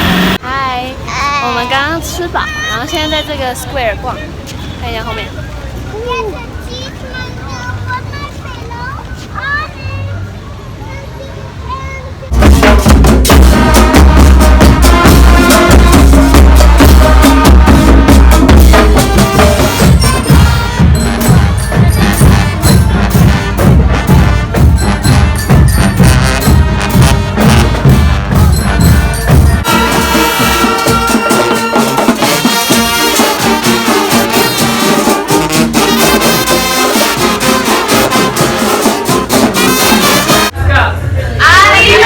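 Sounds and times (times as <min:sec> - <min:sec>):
light high-pitched instruments: 0:12.3 - 0:40.5.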